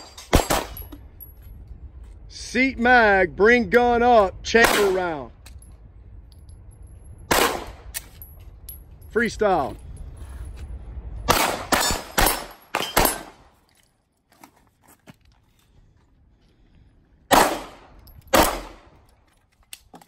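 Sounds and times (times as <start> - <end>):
pistol gunshots: 0.0 - 0.8, 4.6 - 5.2, 7.3 - 7.9, 11.3 - 13.5, 17.3 - 18.9.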